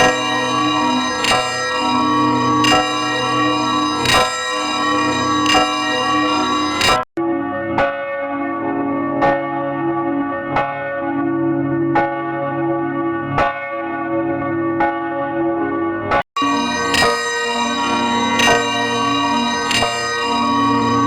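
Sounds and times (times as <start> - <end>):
church bell tolling: 0.0 - 7.0, 16.4 - 21.0.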